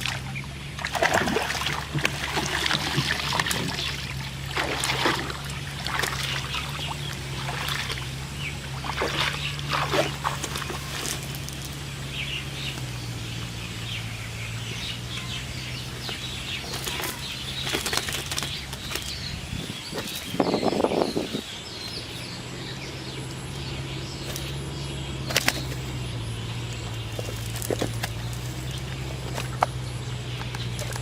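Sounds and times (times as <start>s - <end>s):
pond water splashing: 0.0s - 31.0s
steady low hum: 0.0s - 31.0s.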